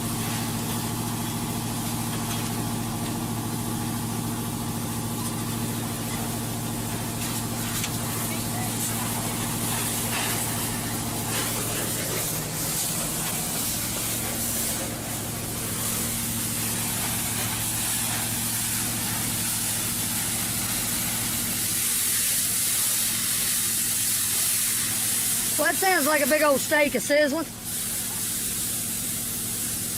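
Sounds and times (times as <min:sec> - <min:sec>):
fire hissing and sizzling: 0:00.0 - 0:29.9.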